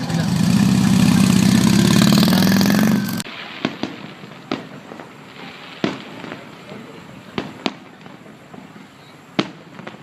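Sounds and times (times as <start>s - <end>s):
firecracker pops: 3.2s - 10.0s.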